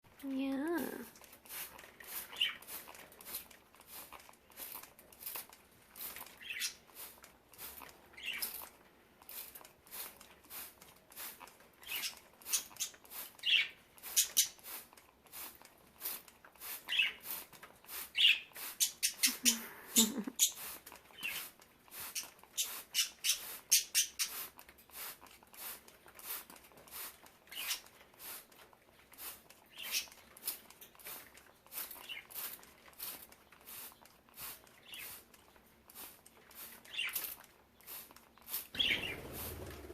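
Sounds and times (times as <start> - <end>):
leaves rustling and wings fluttering: 38.7 - 39.9
budgerigars chirping: 38.8 - 39.6.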